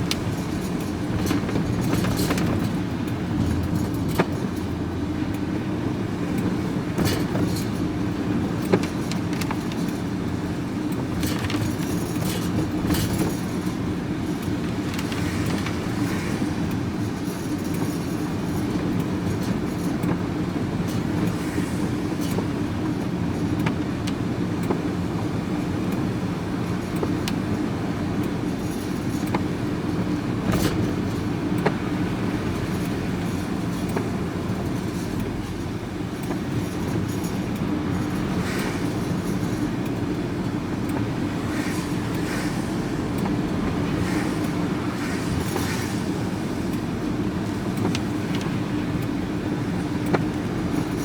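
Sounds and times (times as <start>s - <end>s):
van engine and road drone: 0.0s - 51.0s
scrap metal clicks and rattles: 6.4s - 20.2s.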